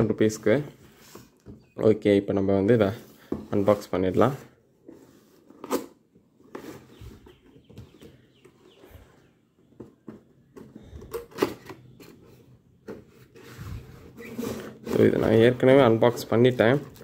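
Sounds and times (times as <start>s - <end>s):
cardboard box rustling and scraping: 13.0s - 16.8s.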